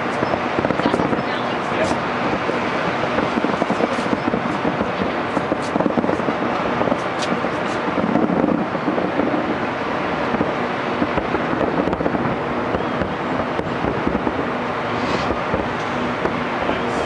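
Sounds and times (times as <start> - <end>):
fireworks crackling: 0.0 - 17.0.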